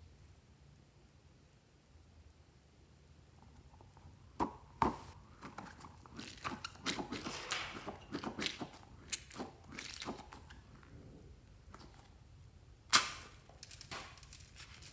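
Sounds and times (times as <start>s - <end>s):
slime kneaded by hand: 4.4s - 11.0s.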